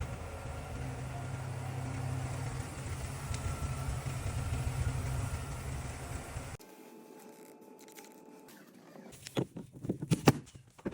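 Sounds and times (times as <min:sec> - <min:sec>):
low mechanical rumble: 0:00.0 - 0:06.6.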